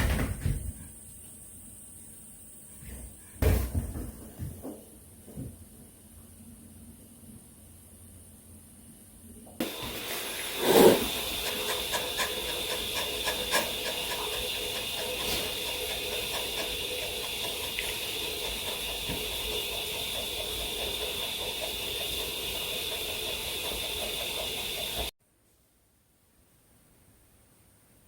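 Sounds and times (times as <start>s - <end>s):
puppy panting: 10.4s - 25.1s.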